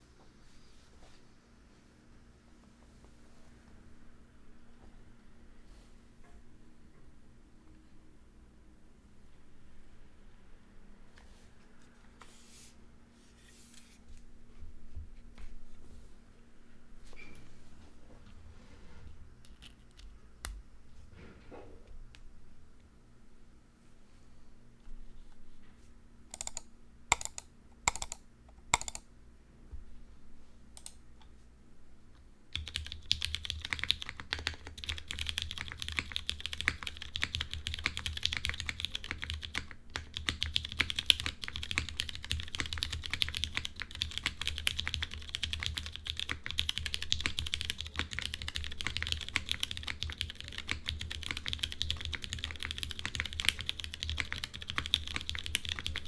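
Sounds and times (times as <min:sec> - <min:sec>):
mechanical keyboard typing: 0:26.3 - 0:29.0, 0:32.5 - 0:56.0.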